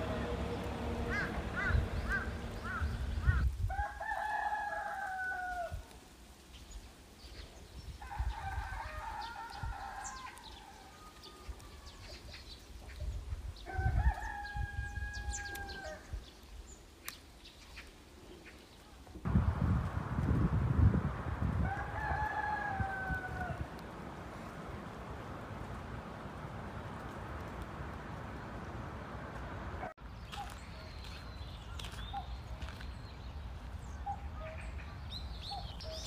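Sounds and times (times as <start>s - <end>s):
rooster crowing: 0.0s - 5.8s, 8.0s - 12.0s, 13.7s - 16.0s, 21.6s - 23.8s.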